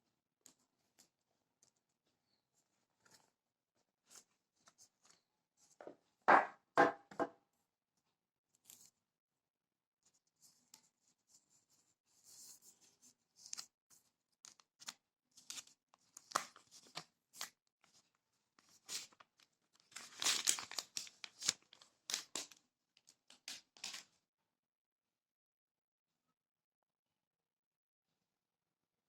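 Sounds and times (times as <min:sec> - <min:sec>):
packaging tearing and crinkling: 0:19.9 - 0:22.6, 0:23.3 - 0:24.0.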